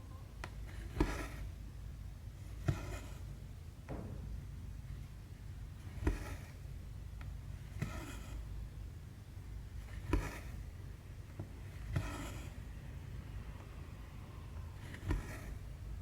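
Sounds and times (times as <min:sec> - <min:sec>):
low steady hum: 0:00.0 - 0:16.0
thread rasping through canvas: 0:00.4 - 0:01.6, 0:02.4 - 0:04.1, 0:05.8 - 0:08.6, 0:09.6 - 0:12.8, 0:14.5 - 0:16.0.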